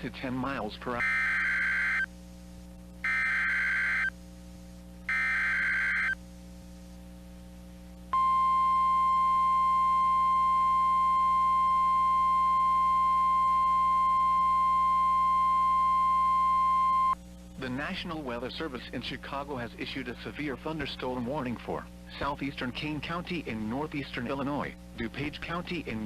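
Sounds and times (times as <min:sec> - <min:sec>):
steady alarm tone: 0:01.0 - 0:02.1, 0:03.0 - 0:04.1, 0:05.1 - 0:06.2, 0:08.2 - 0:17.2.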